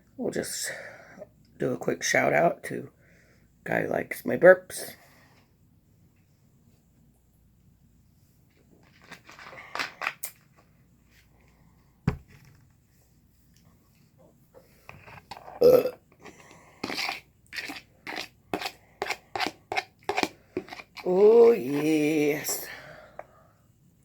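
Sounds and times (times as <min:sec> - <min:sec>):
woman burping loudly: 0:15.6 - 0:16.0.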